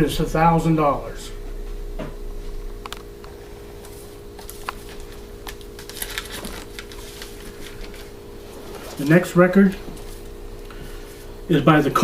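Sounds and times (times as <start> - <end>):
low electrical hum: 0.0 - 12.0
records and sleeves clicking rustling: 3.8 - 10.4.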